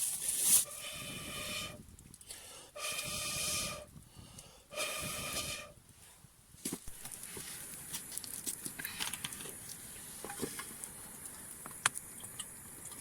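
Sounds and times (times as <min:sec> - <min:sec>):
hissy breaths with whistling tone: 0:00.6 - 0:06.3.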